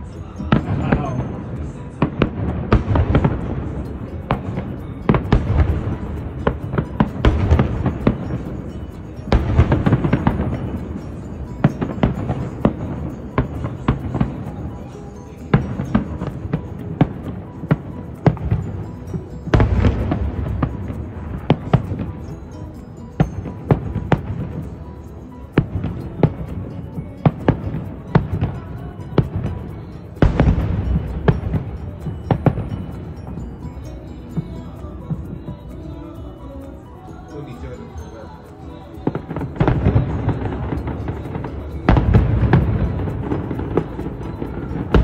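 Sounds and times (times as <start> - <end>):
music playing: 0.0 - 45.0
fireworks exploding: 0.4 - 24.9, 25.5 - 35.6, 39.0 - 45.0
fireworks bangs: 0.5 - 18.8.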